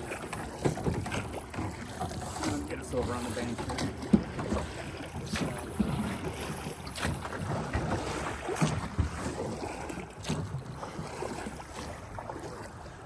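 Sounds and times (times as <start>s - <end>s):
rushing water: 0.0s - 13.0s.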